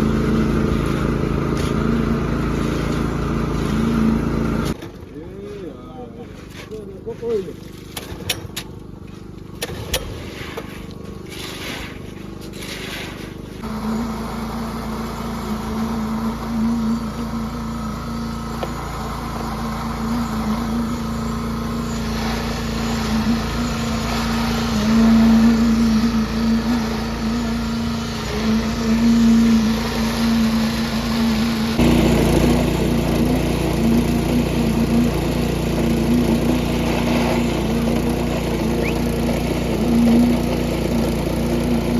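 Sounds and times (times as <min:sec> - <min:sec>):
machine engine running: 0:00.0 - 0:04.8, 0:13.4 - 0:41.9.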